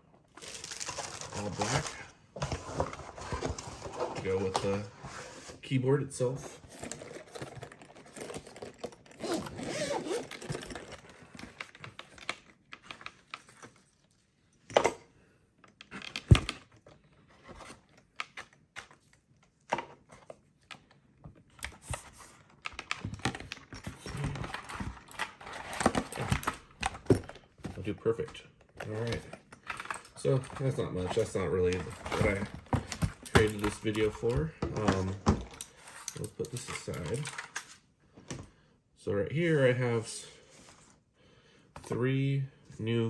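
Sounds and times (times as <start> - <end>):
zip rasping: 9.1 - 10.9.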